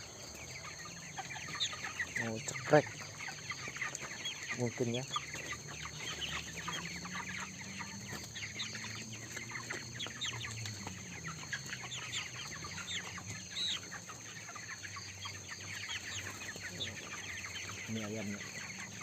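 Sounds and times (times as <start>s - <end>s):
chicks peeping and chirping: 0.0s - 19.0s.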